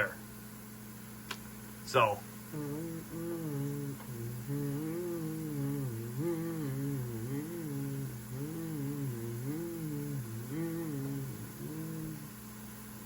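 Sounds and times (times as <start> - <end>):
man humming a tune: 2.5 - 12.4.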